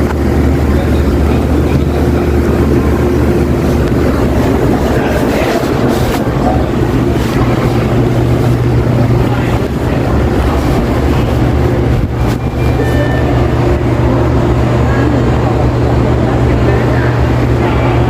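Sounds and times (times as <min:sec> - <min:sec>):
loud steady low hum: 0:00.0 - 0:18.0
faint short electronic beep: 0:12.5 - 0:13.5.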